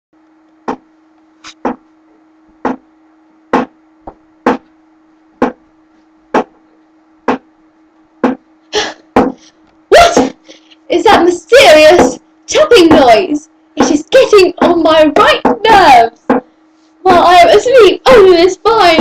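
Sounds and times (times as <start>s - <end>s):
faint steady hum: 0.2s - 19.0s.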